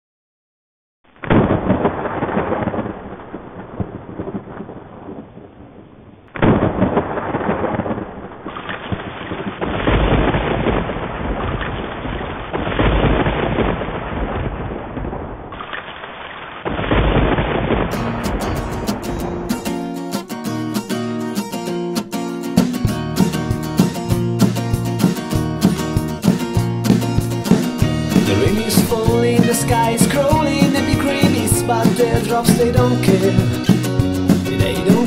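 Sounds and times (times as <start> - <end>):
thunder cracks: 1.2 - 15.6, 16.6 - 20.2
rolling thunder rumbles: 1.4 - 8.5, 16.7 - 20.1
strummed guitar: 17.9 - 35.0.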